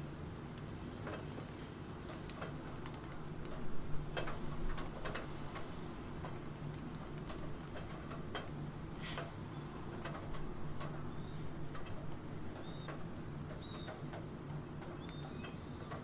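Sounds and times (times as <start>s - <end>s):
rain: 0.0s - 16.0s.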